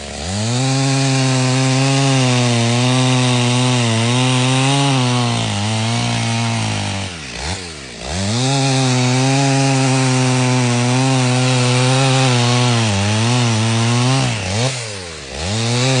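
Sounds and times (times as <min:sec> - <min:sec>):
chainsaw cutting logs: 0:00.0 - 0:16.0.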